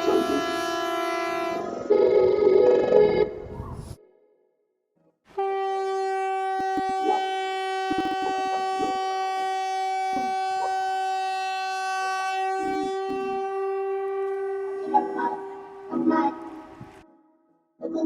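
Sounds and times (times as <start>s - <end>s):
buzzy emergency alarm tone: 7.9s - 15.9s.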